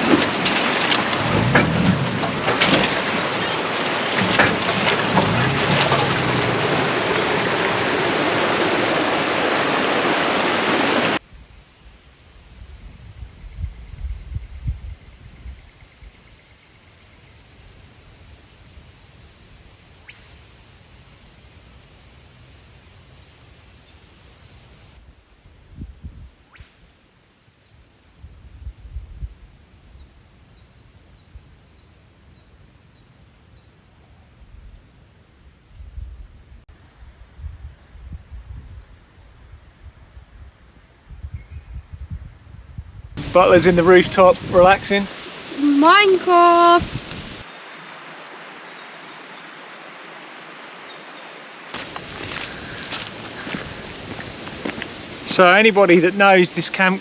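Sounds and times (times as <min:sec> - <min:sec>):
low dull bumps: 0:00.0 - 0:03.4
low rumble: 0:01.0 - 0:03.2
birds calling: 0:43.2 - 0:57.0.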